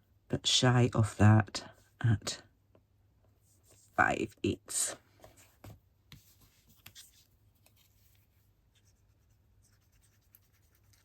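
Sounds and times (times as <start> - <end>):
paper and card rustling: 5.2 - 9.1.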